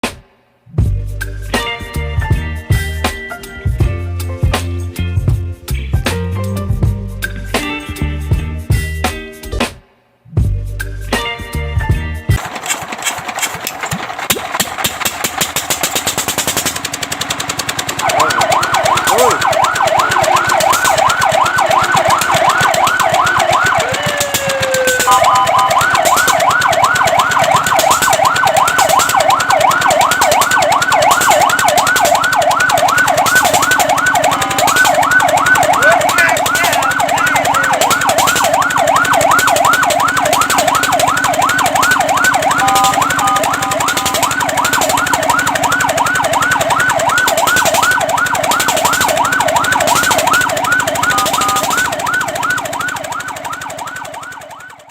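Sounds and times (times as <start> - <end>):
fast rhythmic clatter: 12.4 - 54.9
fire truck siren yelping: 12.4 - 54.9.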